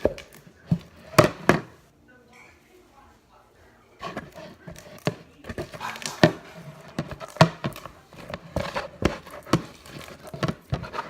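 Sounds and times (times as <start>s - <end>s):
slime squelching: 4.0s - 11.0s.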